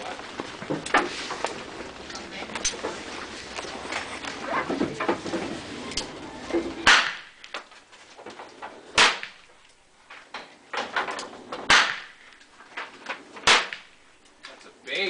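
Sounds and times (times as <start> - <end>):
revolver shots: 6.8 - 7.4, 11.6 - 12.3.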